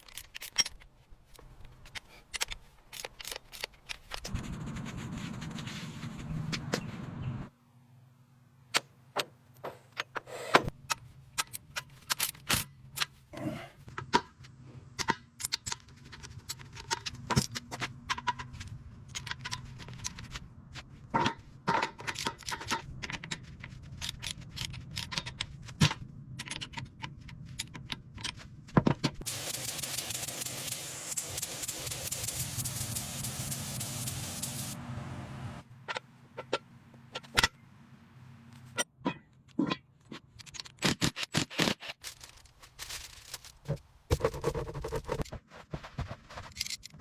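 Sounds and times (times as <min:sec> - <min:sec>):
steady air hiss: 0:29.2 - 0:35.6.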